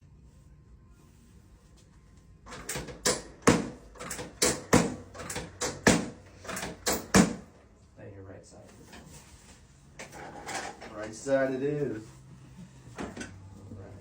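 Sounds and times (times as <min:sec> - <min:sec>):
sharp knocks: 0:03.0 - 0:03.8, 0:04.4 - 0:07.5.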